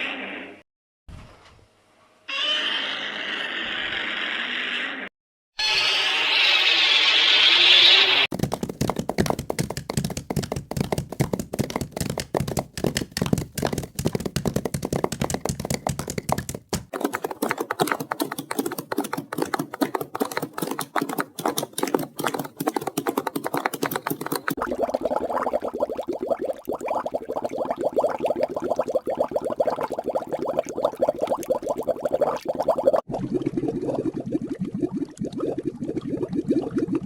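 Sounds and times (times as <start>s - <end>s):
monster clicking chatter: 14.9s - 24.6s.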